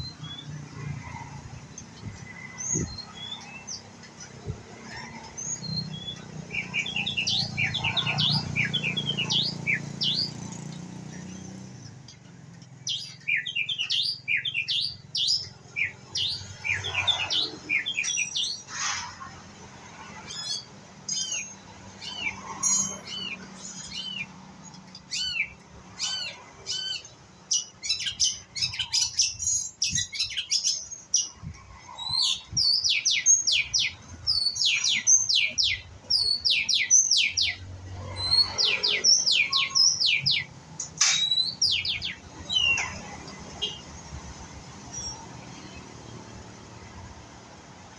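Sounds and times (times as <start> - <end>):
bird chirping and whistling: 32.0 - 42.9.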